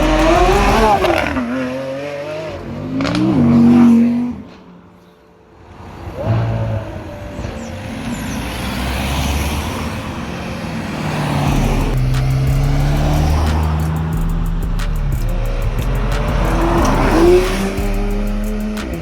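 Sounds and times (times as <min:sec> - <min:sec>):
car engine running: 0:00.0 - 0:01.4, 0:08.2 - 0:19.0.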